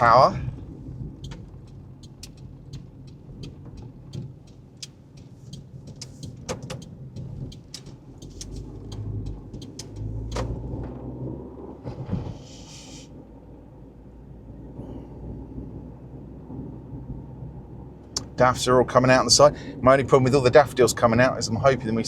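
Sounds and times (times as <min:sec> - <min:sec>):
engine and road rumble: 0:00.0 - 0:22.0
light clicks and ticks: 0:00.8 - 0:10.6.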